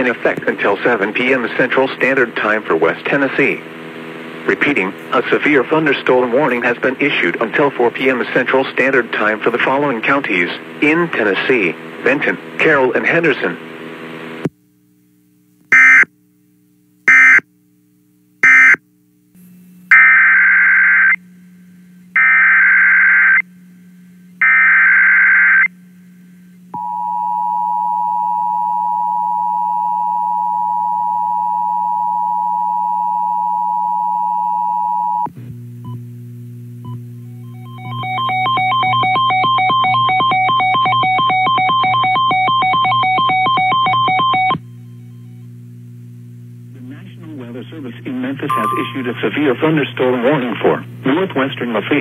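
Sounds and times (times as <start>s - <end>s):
low hum: 25.6s - 52.0s
two-tone attention signal: 37.5s - 44.6s, 48.5s - 49.6s.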